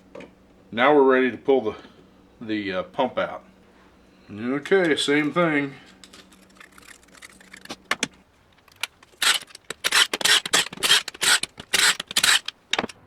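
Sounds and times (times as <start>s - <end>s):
ratchet wrench strokes: 9.1s - 12.5s.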